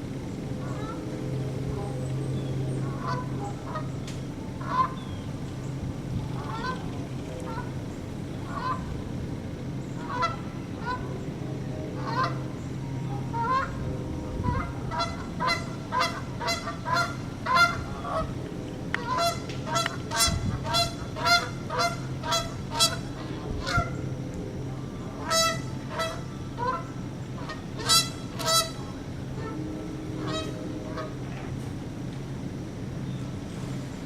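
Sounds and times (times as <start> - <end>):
geese honking: 0.0 - 31.7
steady low hum: 0.0 - 34.0.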